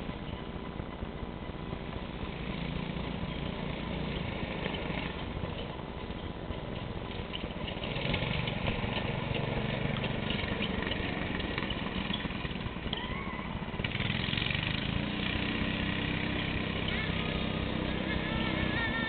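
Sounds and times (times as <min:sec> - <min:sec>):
small engine running: 0:00.0 - 0:19.0.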